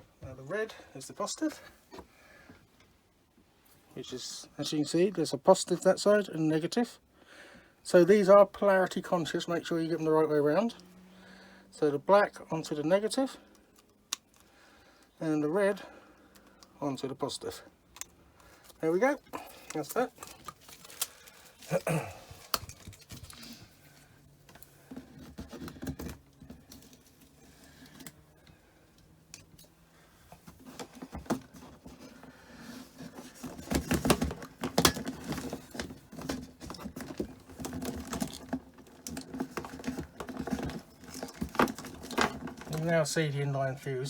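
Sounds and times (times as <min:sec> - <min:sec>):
clicks and taps of handling wiring: 0:22.4 - 0:23.4, 0:33.0 - 0:42.9.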